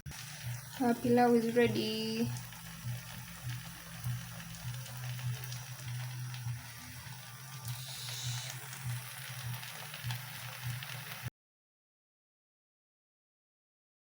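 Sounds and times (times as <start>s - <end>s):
quiet background music: 0.1s - 11.0s
low pulsing tone: 0.3s - 9.8s.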